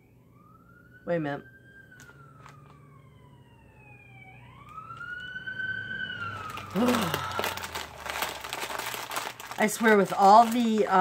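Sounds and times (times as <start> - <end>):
emergency vehicle siren wailing: 0.0 - 9.2
plastic packaging crinkling: 1.9 - 2.8, 6.1 - 11.0
person short voiced sound: 6.7 - 7.6.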